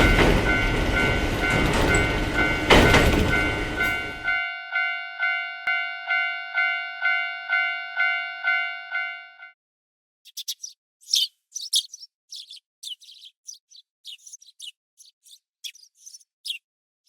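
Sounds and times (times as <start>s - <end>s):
songbirds chirping: 10.3s - 16.6s.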